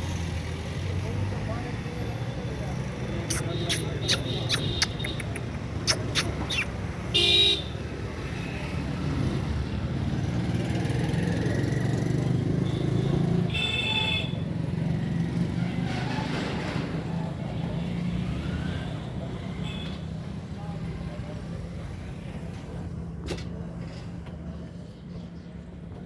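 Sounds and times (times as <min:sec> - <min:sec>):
road traffic: 0:00.0 - 0:23.8
sharp clicks: 0:03.3 - 0:06.7.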